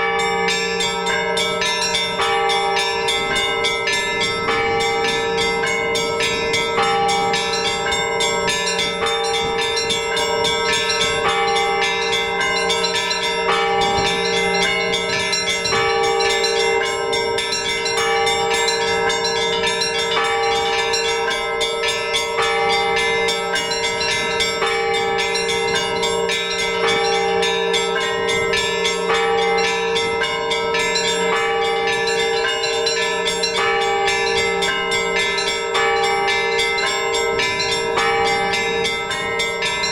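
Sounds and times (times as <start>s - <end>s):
large bells ringing: 0.0s - 39.9s
small bells struck rapidly: 0.0s - 39.9s.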